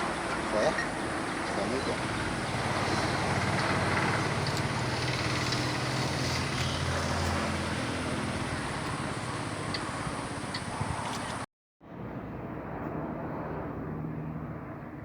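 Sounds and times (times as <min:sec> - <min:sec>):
vehicle engine humming: 0:00.0 - 0:11.5.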